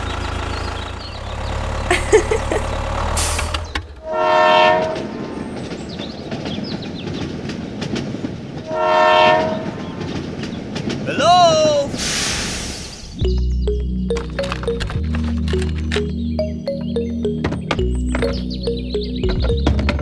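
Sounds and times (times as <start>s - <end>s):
low motor hum: 0.0s - 4.2s
train rumbling: 0.0s - 20.0s
train horn: 4.0s - 5.3s, 8.7s - 9.8s
clicks: 13.2s - 20.0s.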